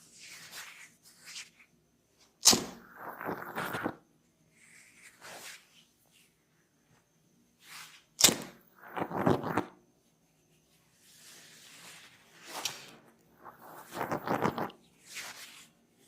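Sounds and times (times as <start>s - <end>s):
crackly rubbing and patting: 10.5s - 15.8s.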